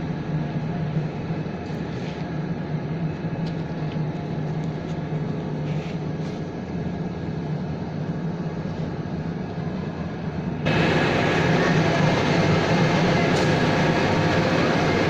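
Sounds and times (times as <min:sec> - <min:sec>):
pellet mill humming: 0:10.7 - 0:15.0.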